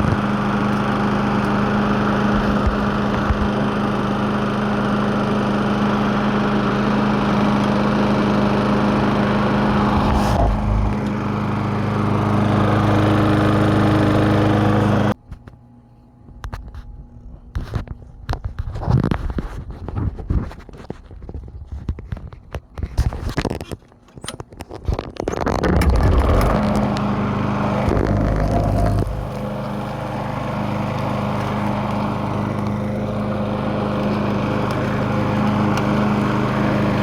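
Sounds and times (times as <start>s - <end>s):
lawn mower engine running: 0.0s - 15.2s, 25.4s - 37.0s.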